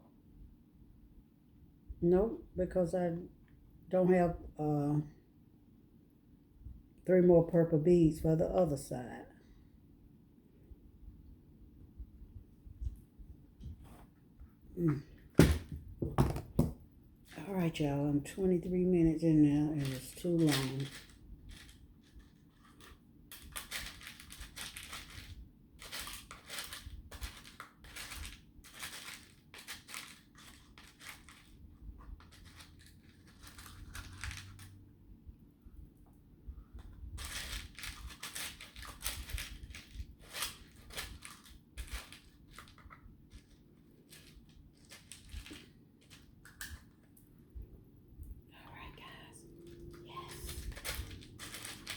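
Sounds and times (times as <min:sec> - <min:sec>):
beads rattling in plastic containers: 0:19.5 - 0:34.8, 0:37.2 - 0:47.1, 0:49.7 - 0:51.9.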